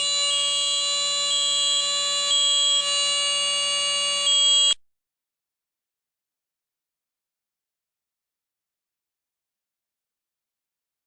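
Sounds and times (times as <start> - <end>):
smoke alarm beeping: 0.0 - 4.8
smoke alarm horn: 0.0 - 4.8.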